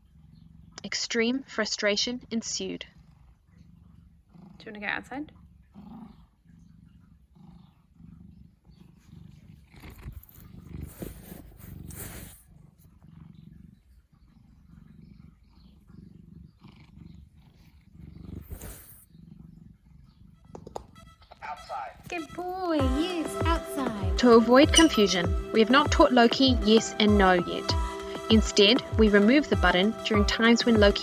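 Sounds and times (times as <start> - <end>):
cat rumbling: 0.0 - 0.9, 2.2 - 20.8.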